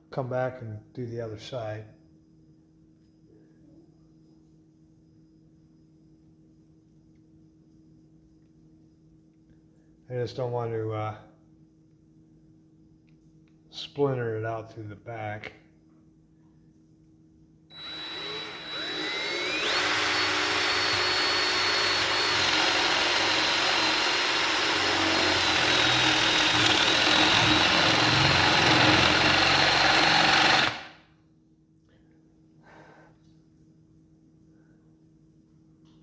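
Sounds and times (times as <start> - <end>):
electric drill boring into wood: 17.7 - 30.9.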